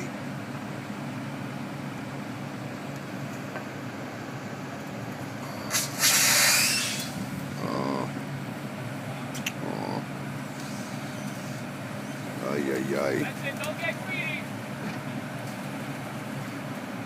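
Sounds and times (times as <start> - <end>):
crane engine droning: 0.0 - 17.0
loud hiss: 5.6 - 7.2.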